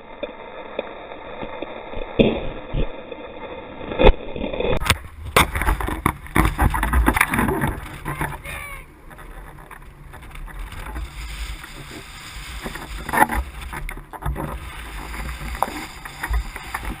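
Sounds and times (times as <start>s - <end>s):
seawater splashing: 4.8s - 17.0s.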